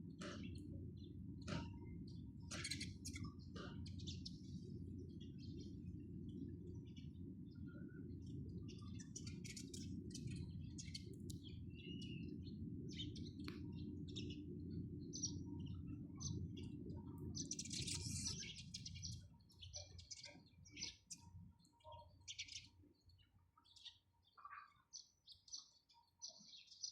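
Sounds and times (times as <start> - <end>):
sparrows chirping: 0.0 - 26.9.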